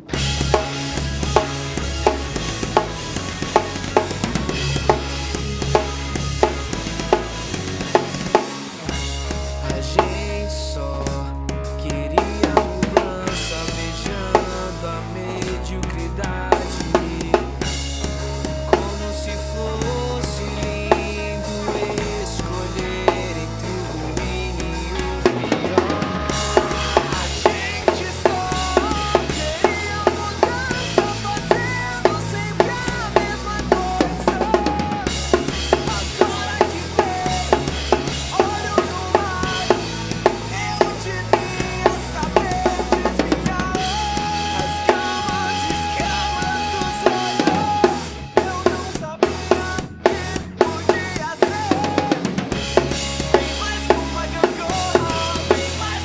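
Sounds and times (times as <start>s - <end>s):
band playing: 0.0s - 56.0s
bass line: 0.0s - 56.0s
drum kit with snare and rimshots: 0.0s - 56.0s.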